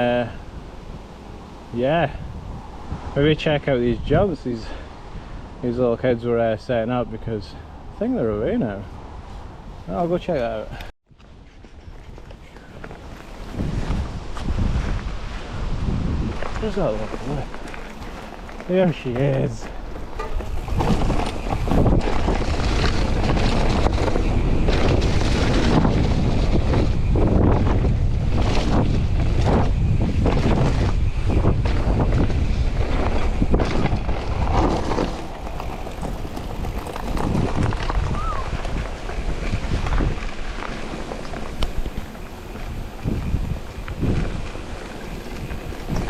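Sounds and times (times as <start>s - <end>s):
wind buffeting microphone: 0.0s - 46.0s
tyre rumble on dirt: 11.7s - 46.0s
bike knocks and rattles: 16.4s - 46.0s.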